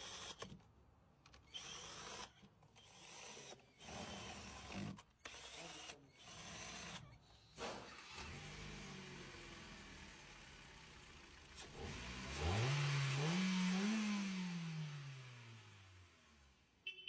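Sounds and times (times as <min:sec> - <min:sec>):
car engine idling and revving: 0:07.9 - 0:16.6.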